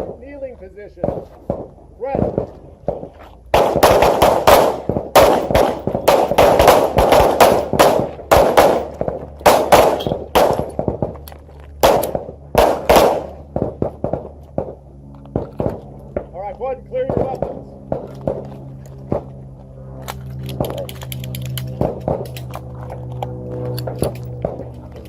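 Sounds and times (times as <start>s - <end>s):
pistols firing: 1.0s - 11.2s, 11.8s - 16.3s, 16.9s - 18.5s, 21.7s - 22.5s.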